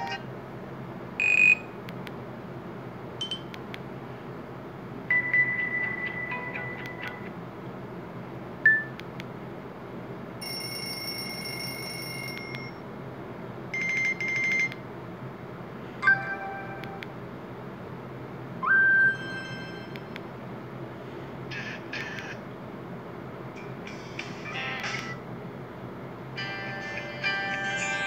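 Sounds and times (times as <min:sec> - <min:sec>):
phone alert tones: 0:16.0 - 0:17.0.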